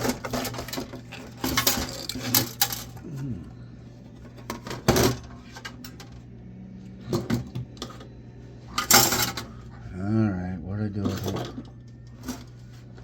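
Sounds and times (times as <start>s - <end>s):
small metal parts clinking: 0.0s - 3.0s.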